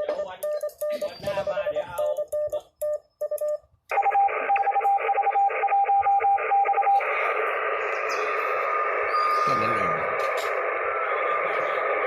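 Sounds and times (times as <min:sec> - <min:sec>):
high morse code tone: 0:00.0 - 0:07.0
low morse code tone: 0:00.0 - 0:07.3
radio receiver hiss: 0:04.0 - 0:12.0.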